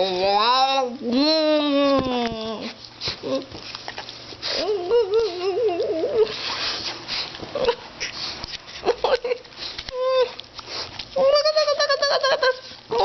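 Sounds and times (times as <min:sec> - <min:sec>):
rustling: 0:01.6 - 0:13.0
dog whining: 0:04.4 - 0:06.8, 0:07.5 - 0:08.2, 0:08.8 - 0:13.0.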